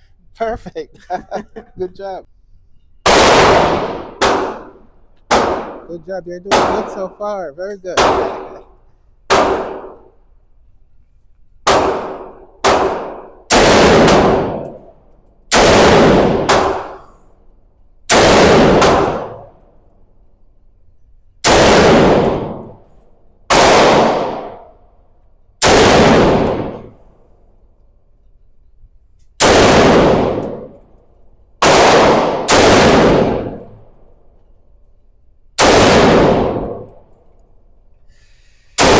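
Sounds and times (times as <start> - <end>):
gunshots echoing: 3.0 - 10.1, 11.7 - 17.2, 18.1 - 19.6, 21.4 - 22.9, 23.5 - 24.8, 25.6 - 27.0, 29.4 - 30.9, 31.6 - 33.9, 35.6 - 37.4.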